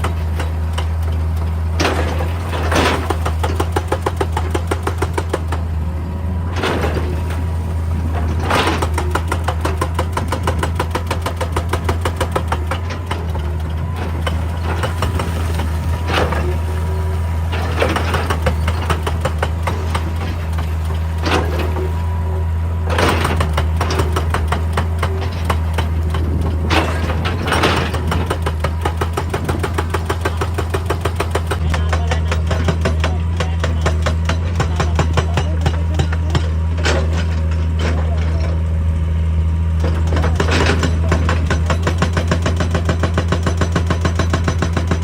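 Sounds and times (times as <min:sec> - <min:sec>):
diesel engine under load: 0:00.0 - 0:45.0
hydraulic rock breaker hammering: 0:00.0 - 0:45.0.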